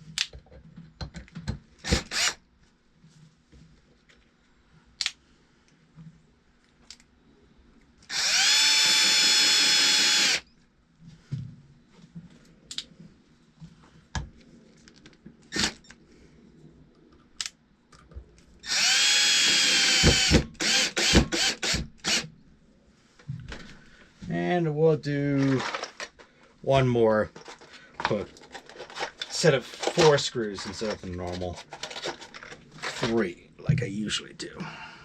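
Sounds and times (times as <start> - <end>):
power drill driving screws: 1.8 - 2.4, 8.1 - 10.4, 15.5 - 15.9, 18.6 - 22.3.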